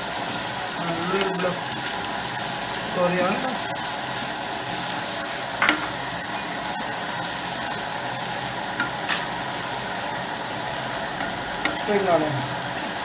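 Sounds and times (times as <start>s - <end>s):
chicken sizzling in a pan: 0.0s - 13.0s
utensil clinking against pan: 1.1s - 3.9s, 5.6s - 6.6s, 11.2s - 11.9s.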